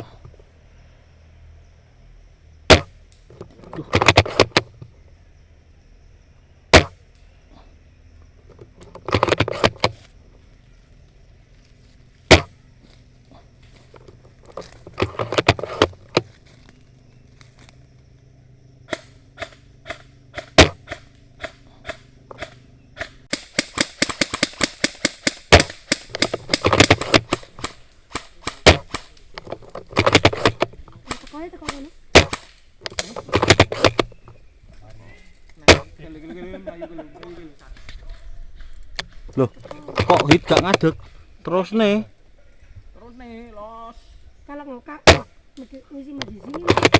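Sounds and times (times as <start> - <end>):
airsoft guns firing: 18.9 - 29.2, 30.0 - 34.0.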